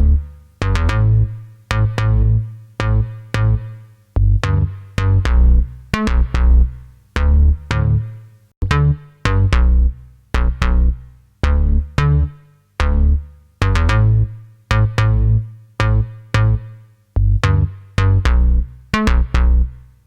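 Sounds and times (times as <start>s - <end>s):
plucked bass line: 0.0s - 20.0s.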